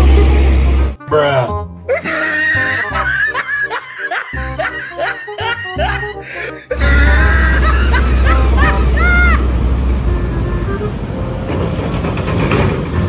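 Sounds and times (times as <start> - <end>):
large vehicle engine rumble: 0.0 - 1.0, 6.8 - 13.0
snickering laughter: 1.9 - 9.5.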